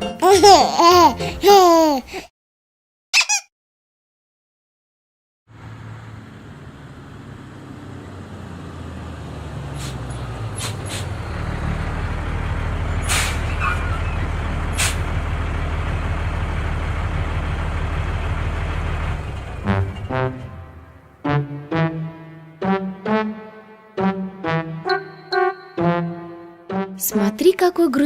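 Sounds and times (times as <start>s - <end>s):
truck engine rumbling: 5.5s - 23.5s
air brakes hissing: 9.7s - 11.2s, 13.0s - 15.2s.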